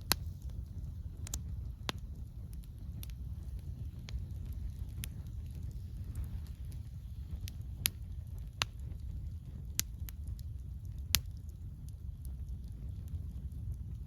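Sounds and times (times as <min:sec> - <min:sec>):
campfire crackling: 0:00.0 - 0:14.0.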